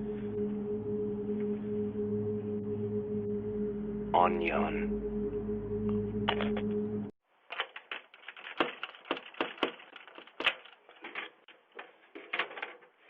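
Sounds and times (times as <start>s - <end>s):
sharp cracks and clicks: 7.5s - 11.0s
crunching handling noise: 7.5s - 13.0s.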